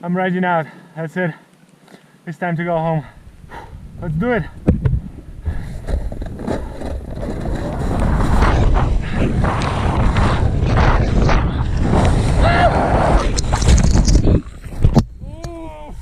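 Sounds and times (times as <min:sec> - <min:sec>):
wind buffeting microphone: 0:02.9 - 0:16.0
snowboard scraping through snow: 0:05.4 - 0:14.8.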